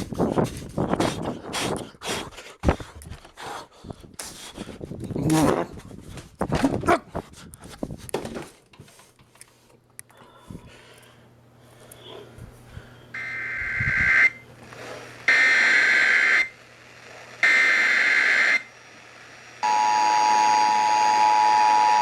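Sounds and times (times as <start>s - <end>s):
data tone bursts: 13.2s - 14.4s, 17.4s - 18.7s
two-tone attention signal: 19.6s - 22.0s.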